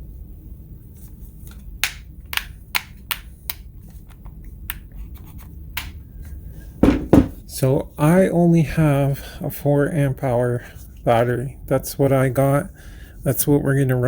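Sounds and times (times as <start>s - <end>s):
sharp clicks of plastic parts: 1.5s - 3.6s.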